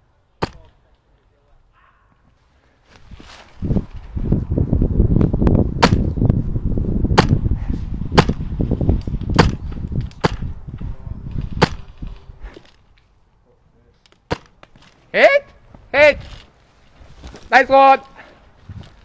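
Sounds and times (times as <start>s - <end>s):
dense low rumble: 3.6s - 12.5s
airsoft rifle shots: 7.2s - 7.4s, 11.6s - 11.9s.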